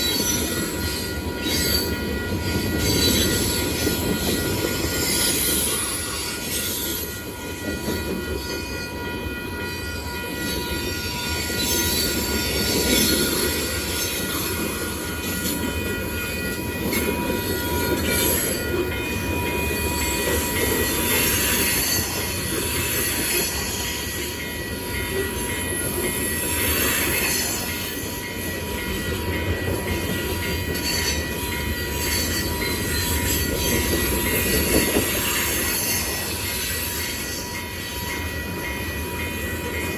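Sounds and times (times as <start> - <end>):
train wheels rumbling on rails: 0.0 - 39.9.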